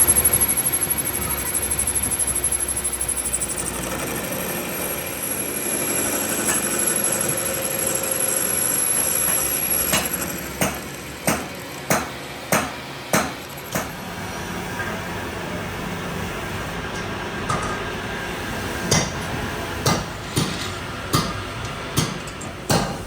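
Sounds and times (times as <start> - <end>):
machine whining: 0.0 - 21.1
hammer striking metal: 9.3 - 14.0, 18.9 - 23.0.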